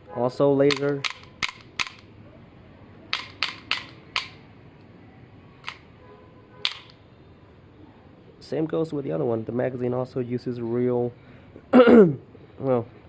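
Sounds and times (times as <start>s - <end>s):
toy pistol mechanical clicks: 0.7s - 2.1s, 3.1s - 4.4s, 5.6s - 5.9s, 6.6s - 7.0s.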